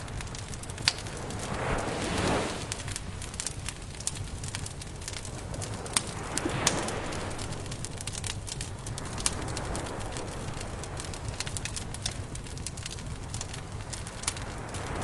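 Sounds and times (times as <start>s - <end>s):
steady low rush: 0.0s - 9.4s
campfire crackling and popping: 0.0s - 15.0s.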